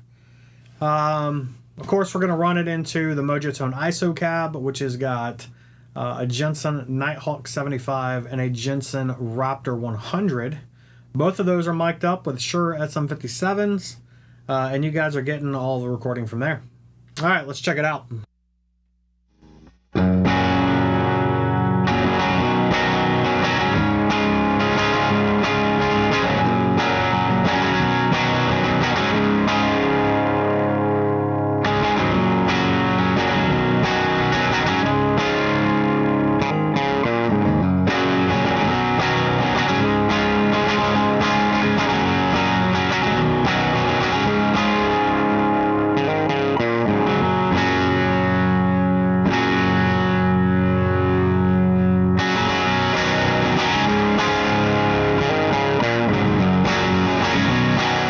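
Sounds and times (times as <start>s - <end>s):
electric guitar chords and riffs: 19.4s - 58.0s.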